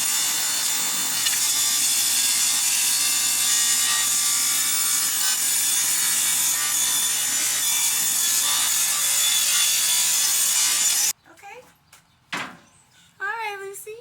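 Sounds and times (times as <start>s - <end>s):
table saw cutting wood: 0.0s - 11.1s.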